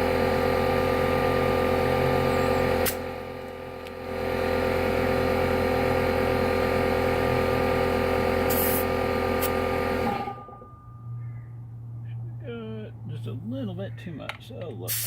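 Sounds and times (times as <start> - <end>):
air compressor running: 0.0 - 10.6
air hissing through hose: 8.5 - 9.5.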